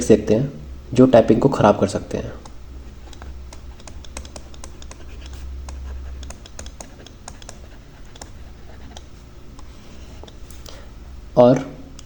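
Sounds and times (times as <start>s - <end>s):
computer keyboard typing: 2.4s - 10.6s.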